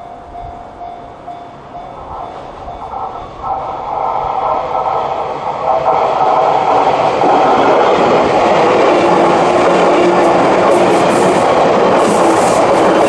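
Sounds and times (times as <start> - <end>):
faint crossing warning bell: 0.0 - 3.8
train wheels rushing on rails: 0.0 - 13.0
wheels and rails hissing: 1.2 - 13.0.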